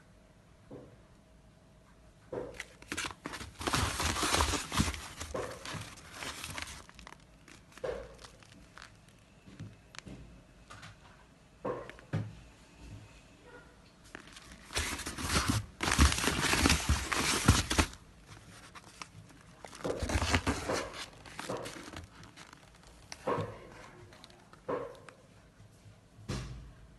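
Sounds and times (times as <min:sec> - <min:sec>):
plastic tearing: 0:02.6 - 0:09.3, 0:14.1 - 0:23.3
plastic wrapping crinkling: 0:02.6 - 0:10.1, 0:14.0 - 0:24.6.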